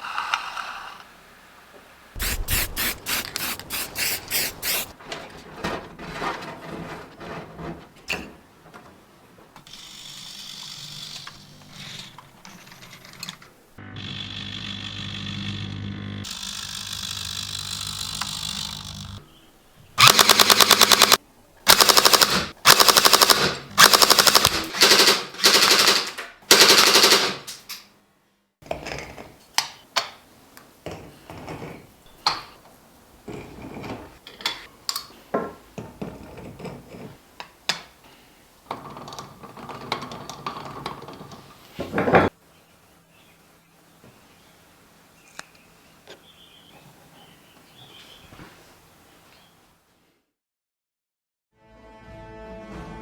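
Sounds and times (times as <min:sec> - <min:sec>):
mechanical hum: 0:01.2 - 0:20.1
toy gun automatic fire bursts: 0:02.2 - 0:04.9, 0:20.0 - 0:27.5.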